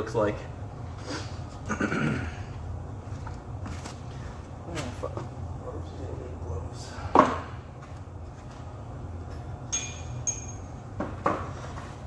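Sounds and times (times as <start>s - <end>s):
ringing metallic clinks: 9.7s - 10.8s.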